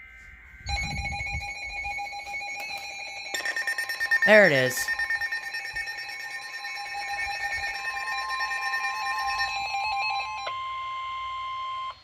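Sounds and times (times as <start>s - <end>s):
steady warning alarm tone: 0.0s - 12.0s
alert radio beeps: 3.4s - 5.2s.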